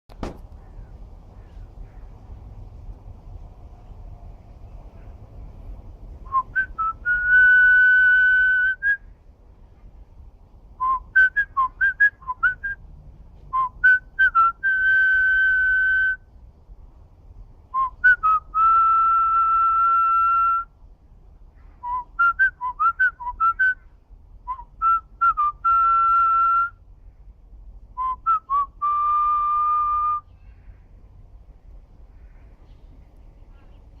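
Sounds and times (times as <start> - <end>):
person whistling: 6.3 - 9.0, 28.0 - 30.3.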